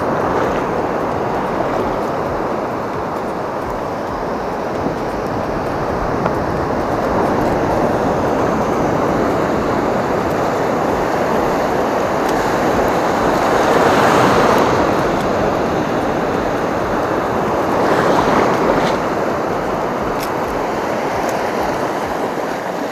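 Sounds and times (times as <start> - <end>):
waves and surf: 0.0 - 22.9
wind: 0.0 - 22.9.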